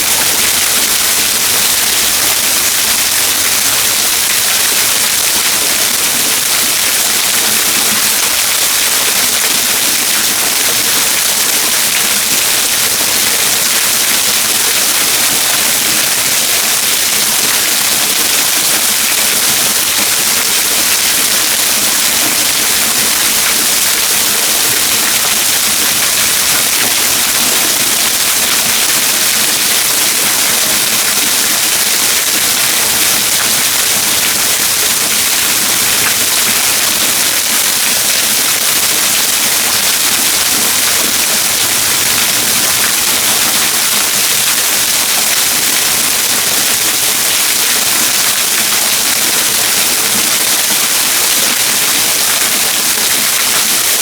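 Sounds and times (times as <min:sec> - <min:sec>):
waterfall splashing: 0:00.0 - 0:54.0.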